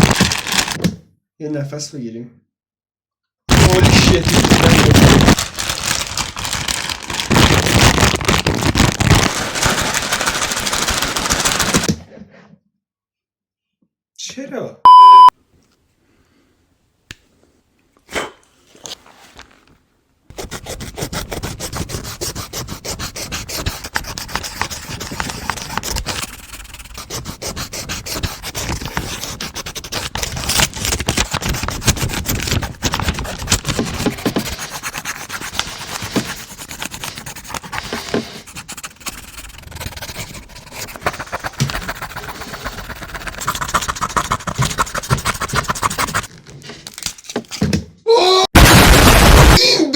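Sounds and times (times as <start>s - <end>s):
harsh rubbing and scratching: 3.5s - 11.9s, 20.3s - 46.3s.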